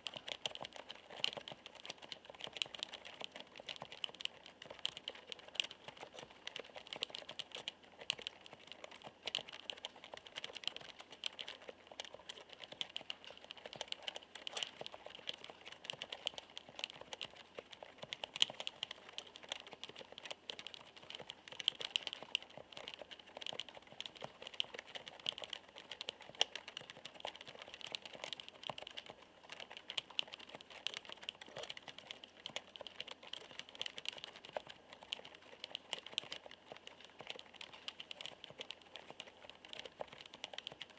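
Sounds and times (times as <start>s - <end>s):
typing on keyboard: 0.0s - 40.9s.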